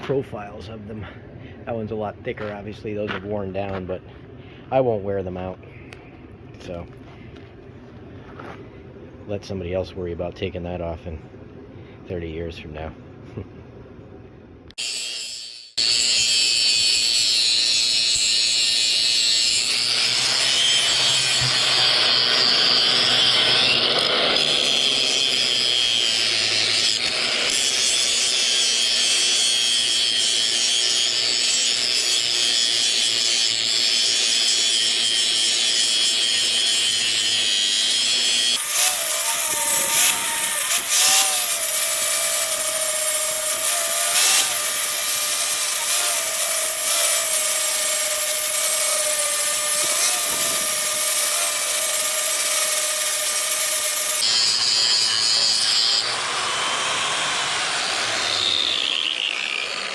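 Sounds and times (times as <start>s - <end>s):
wavering grinder whine: 14.7s - 59.9s
power grinder grinding steel: 14.8s - 59.9s.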